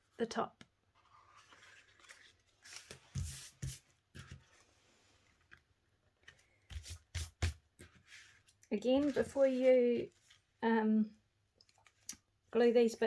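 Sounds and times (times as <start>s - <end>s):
paper cards rustling: 1.0s - 4.7s, 6.3s - 10.5s.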